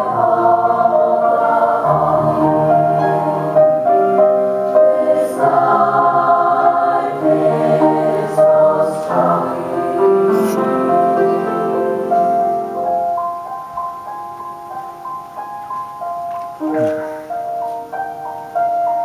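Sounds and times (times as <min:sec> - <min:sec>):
chamber choir singing: 0:00.0 - 0:12.8.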